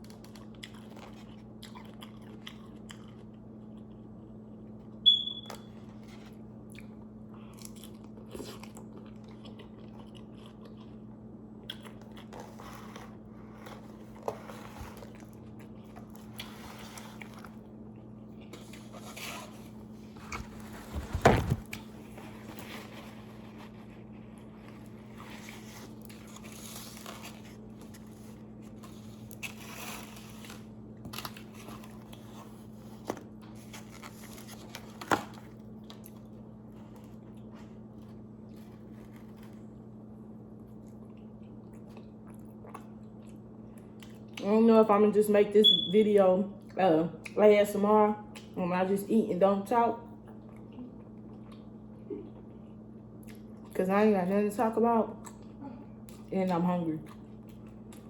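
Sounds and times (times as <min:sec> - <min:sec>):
person chewing: 0:00.0 - 0:05.3, 0:06.6 - 0:20.8, 0:40.6 - 0:44.4, 0:50.2 - 0:53.8, 0:57.0 - 0:58.0.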